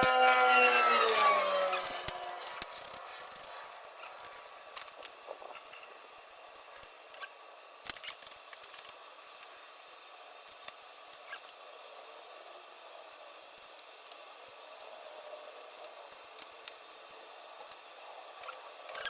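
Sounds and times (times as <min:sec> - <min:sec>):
small parts clicking: 0:00.0 - 0:05.7, 0:06.5 - 0:09.5
low steady hiss: 0:01.0 - 0:19.0.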